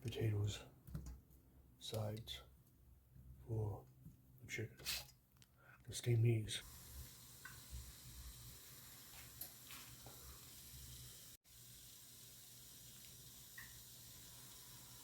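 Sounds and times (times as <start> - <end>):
faint steady hiss: 3.6 - 15.0.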